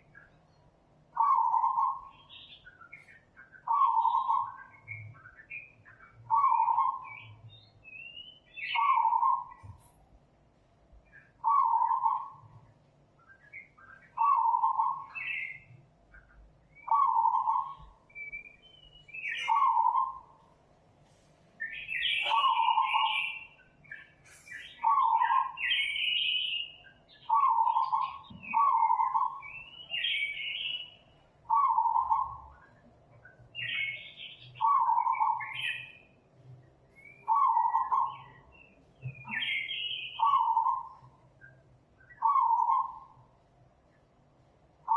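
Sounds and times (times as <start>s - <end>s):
birds chirping: 0.0s - 44.9s
bird hooting: 1.2s - 2.1s, 3.6s - 4.7s, 6.3s - 7.2s, 8.7s - 9.8s, 11.4s - 12.5s, 14.2s - 15.7s, 16.8s - 18.5s, 19.2s - 20.4s, 21.8s - 23.5s, 24.7s - 26.6s, 27.3s - 30.8s, 31.5s - 32.5s, 34.6s - 36.0s, 37.0s - 38.5s, 39.1s - 41.2s, 42.1s - 43.2s.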